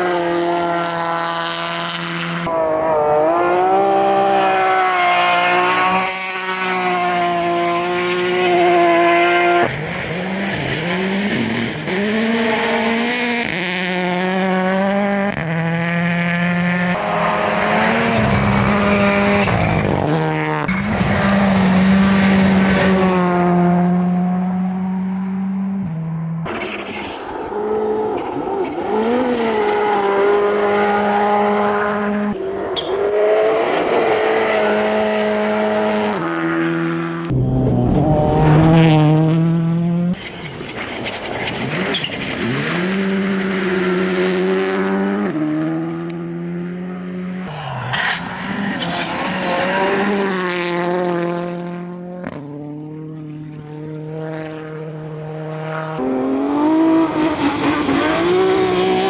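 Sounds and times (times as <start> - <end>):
rally car engines revving: 0.0 - 59.0.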